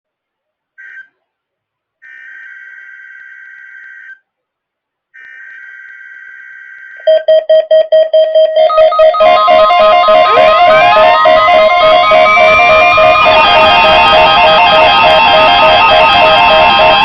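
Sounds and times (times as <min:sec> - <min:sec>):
digital data tone bursts: 0:07.1 - 0:17.0
loud rapid beeping: 0:07.1 - 0:17.0.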